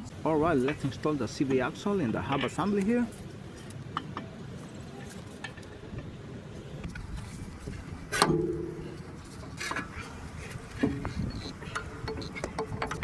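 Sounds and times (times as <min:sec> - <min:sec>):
metal clanks and knocks: 0:08.1 - 0:13.0.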